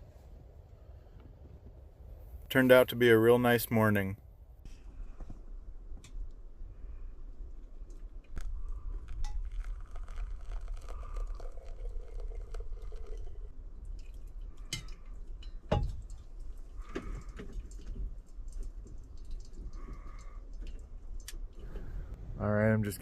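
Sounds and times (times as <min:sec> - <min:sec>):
steady low rumble: 0:21.5 - 0:23.0.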